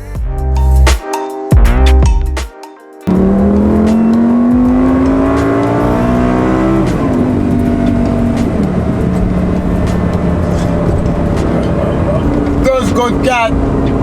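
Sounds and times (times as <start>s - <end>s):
car engine accelerating: 3.1s - 14.0s.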